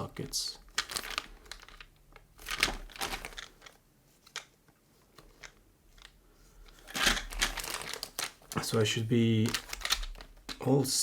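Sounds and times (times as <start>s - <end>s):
plastic bag crinkling: 0.6s - 3.8s, 6.7s - 10.8s.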